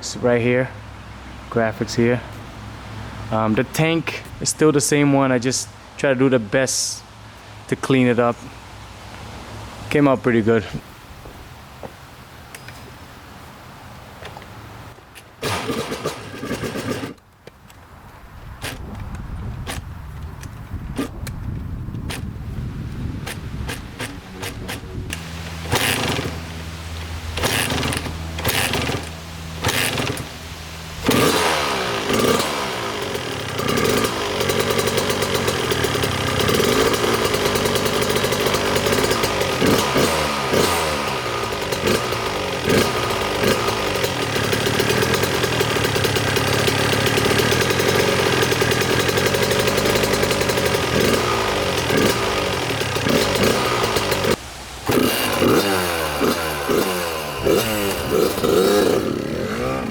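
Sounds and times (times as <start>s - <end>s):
dirt bike engine revving: 15.4s - 17.2s, 22.0s - 59.9s.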